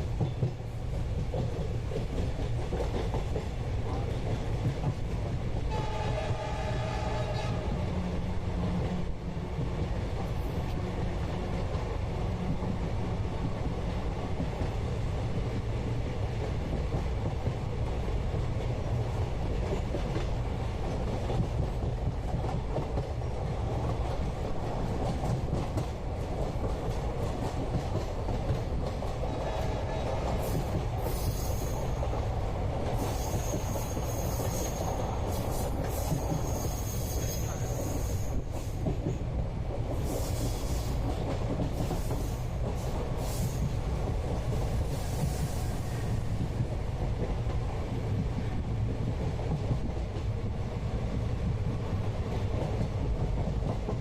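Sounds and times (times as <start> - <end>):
train wheels rumbling on rails: 0.0 - 54.0
hiss: 30.4 - 32.0, 32.9 - 38.9, 40.0 - 41.1, 41.7 - 43.9, 44.6 - 46.3.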